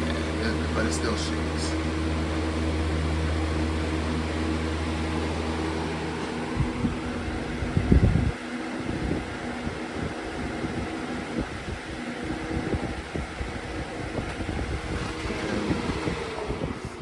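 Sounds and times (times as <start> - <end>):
box fan humming: 0.0 - 17.0
air buffeting microphone: 6.1 - 17.0.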